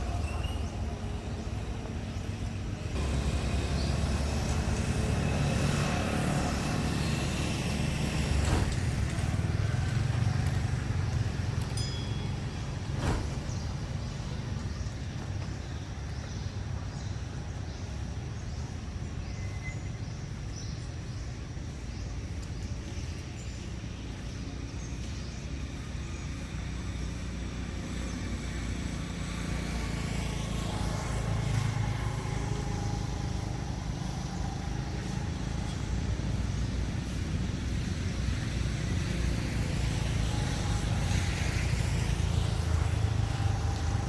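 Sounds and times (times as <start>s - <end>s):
road traffic rumble: 0.0s - 44.0s
vehicle passing: 2.6s - 11.6s.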